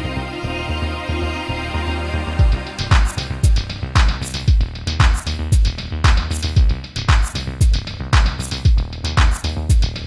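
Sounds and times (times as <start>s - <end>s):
synth chords: 0.0s - 6.6s
pulsing bass line: 0.0s - 10.0s.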